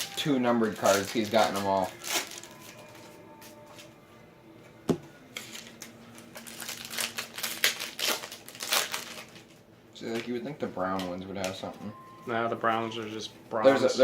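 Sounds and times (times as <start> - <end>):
wrappers crinkling: 0.0 - 3.9, 5.4 - 11.8.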